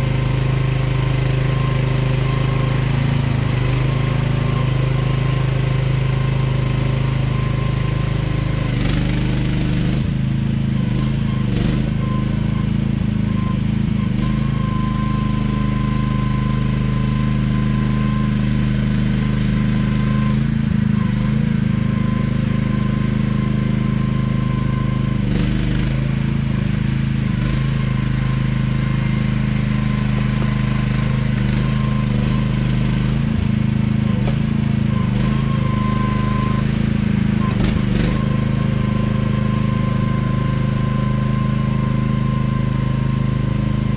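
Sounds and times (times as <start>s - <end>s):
excavator engine running: 0.0s - 43.9s
thin high whine: 27.3s - 43.9s.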